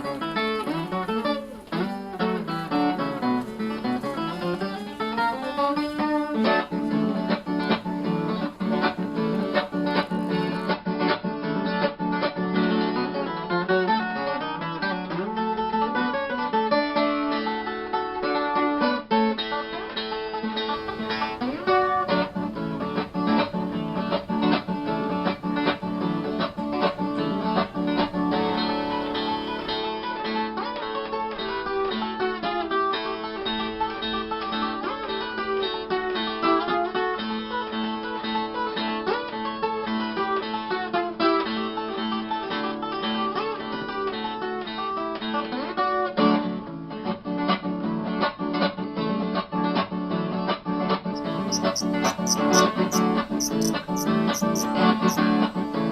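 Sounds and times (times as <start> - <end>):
plucked guitar notes: 0.0 - 16.5, 20.6 - 32.4.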